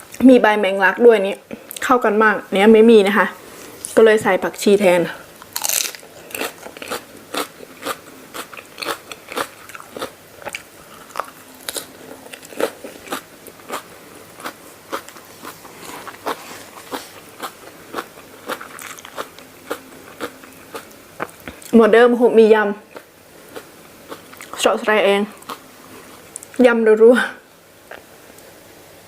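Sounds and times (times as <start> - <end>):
person chewing crunchy food: 5.4 - 21.8, 22.9 - 24.6, 25.4 - 26.6.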